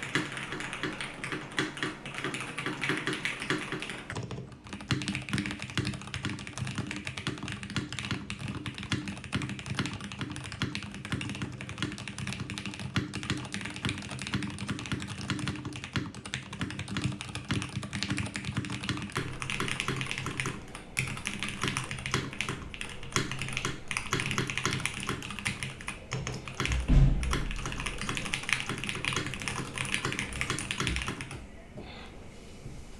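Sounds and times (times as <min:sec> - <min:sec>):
mechanical keyboard typing: 0:00.0 - 0:04.2, 0:04.9 - 0:31.4
low thump: 0:26.7 - 0:27.8.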